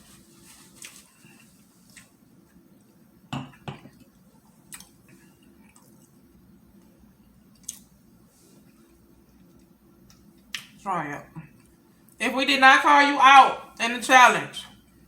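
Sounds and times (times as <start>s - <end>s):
person chewing: 0.7s - 1.1s, 1.8s - 2.2s, 4.6s - 6.2s, 7.5s - 8.0s.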